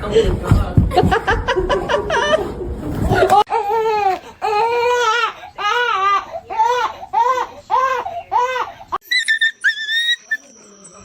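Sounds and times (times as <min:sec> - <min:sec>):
dog crying and whining: 0:09.0 - 0:11.0
high whistle-like squeaks: 0:09.0 - 0:11.0.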